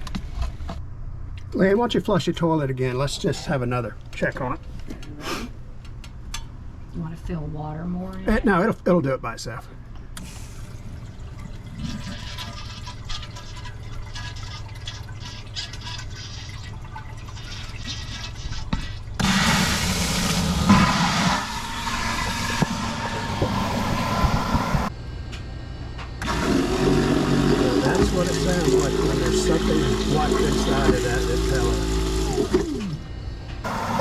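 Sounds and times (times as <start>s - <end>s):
macerator pump churning: 10.2s - 24.9s, 26.2s - 34.0s
water running into toilet bowl: 10.3s - 23.6s, 26.5s - 32.7s.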